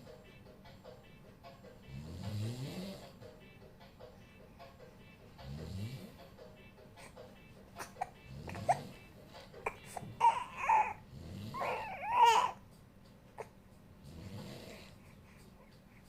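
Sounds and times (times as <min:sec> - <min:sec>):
man snoring: 0:01.9 - 0:03.2, 0:05.4 - 0:06.2, 0:11.1 - 0:11.7, 0:14.0 - 0:15.0
baby crying: 0:09.6 - 0:11.0, 0:11.6 - 0:12.6.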